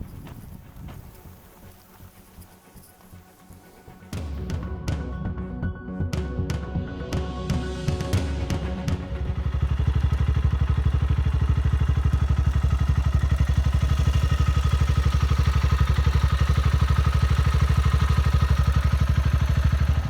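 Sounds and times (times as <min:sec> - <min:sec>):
motorcycle engine thumping: 0:07.5 - 0:20.0.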